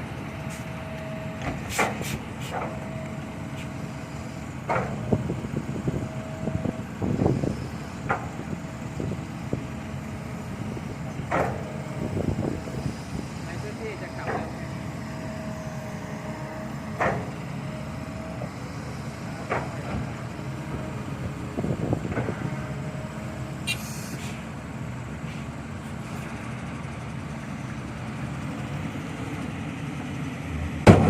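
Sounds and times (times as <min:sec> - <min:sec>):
heavy truck engine running: 0:00.0 - 0:31.0
brief hiss: 0:23.7 - 0:24.4.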